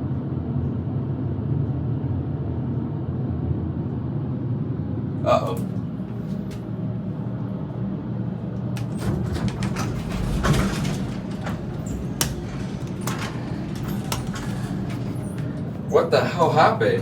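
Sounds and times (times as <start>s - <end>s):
elevator machinery hum: 5.0s - 17.0s
mechanism clicks and knocks: 8.8s - 15.9s.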